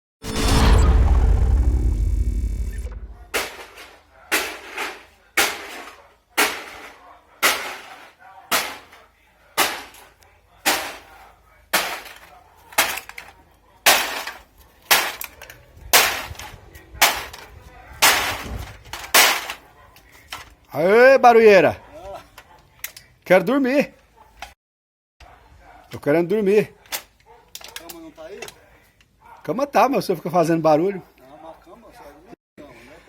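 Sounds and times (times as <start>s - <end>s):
aluminium cans being pounded flat: 3.4s - 9.0s.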